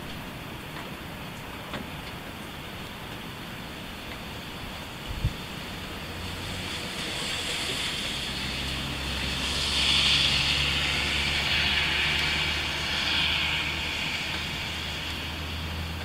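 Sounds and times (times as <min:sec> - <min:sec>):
tyre hiss on wet road: 0:00.2 - 0:16.0.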